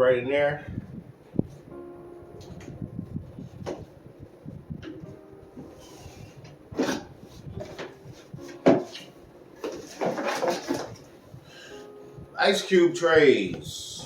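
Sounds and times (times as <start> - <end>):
packaging rustling and scraping: 5.6 - 11.3.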